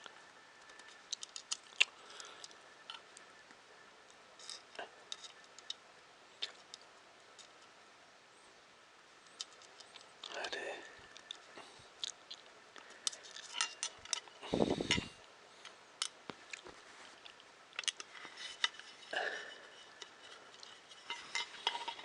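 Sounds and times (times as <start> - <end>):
small metal parts clicking and clinking: 4.4 - 5.8, 13.0 - 15.1, 17.8 - 22.0.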